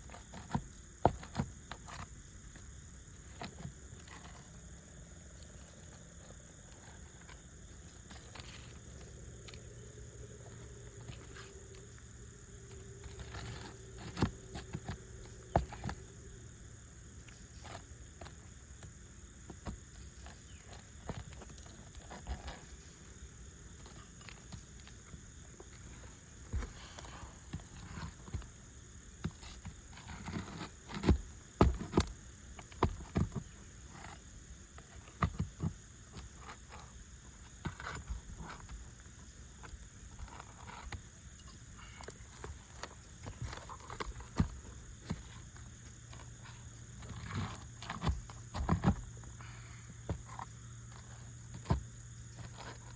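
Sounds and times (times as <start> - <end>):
nail puller tapping and scraping: 10.4 - 22.9, 29.2 - 38.8, 39.6 - 52.9.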